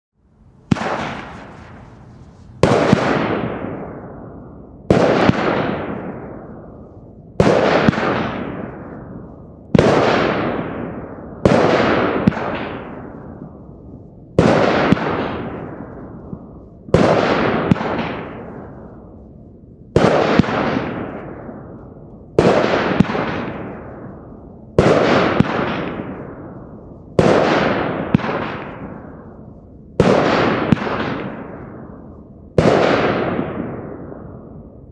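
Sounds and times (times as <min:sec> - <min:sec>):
fireworks bangs: 0:00.5 - 0:06.3
fireworks hiss: 0:00.9 - 0:02.7.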